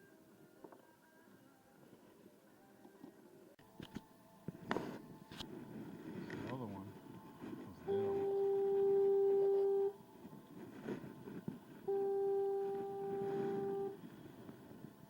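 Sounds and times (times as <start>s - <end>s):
low horn blasts: 7.6s - 10.0s, 11.8s - 14.1s.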